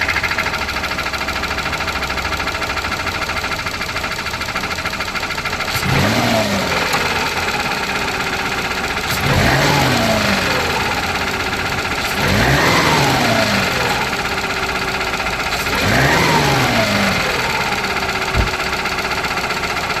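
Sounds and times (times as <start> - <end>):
car engine idling and revving: 0.0 - 20.0
short thump: 18.3 - 18.6.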